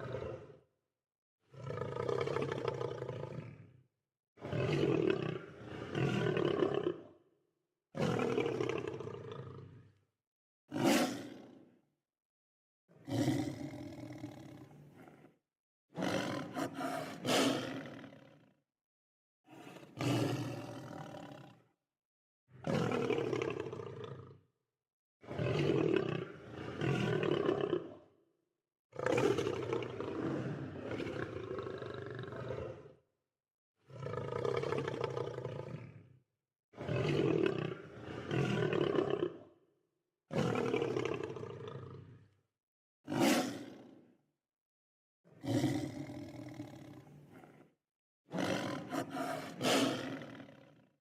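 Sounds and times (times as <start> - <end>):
lion roaring and growling: 48.3 - 50.6.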